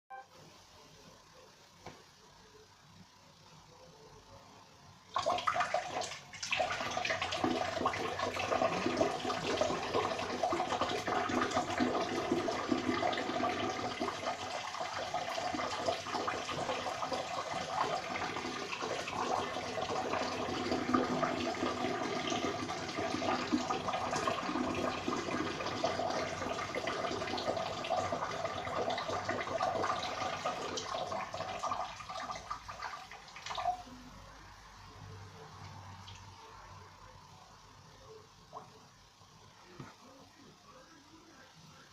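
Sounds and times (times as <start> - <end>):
urine splashing into toilet water: 5.1 - 33.9.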